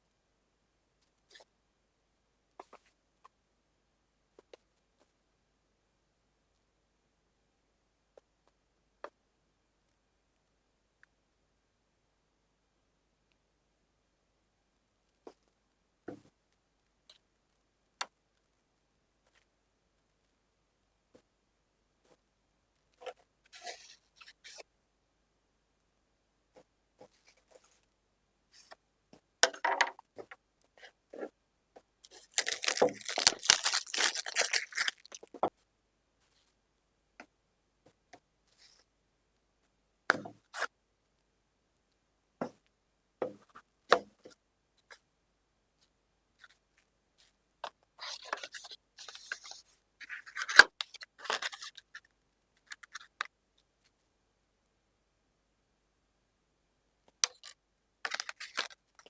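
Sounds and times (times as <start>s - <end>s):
plastic crinkling: 32.0s - 35.3s, 58.1s - 58.8s
packaging tearing: 32.1s - 35.3s.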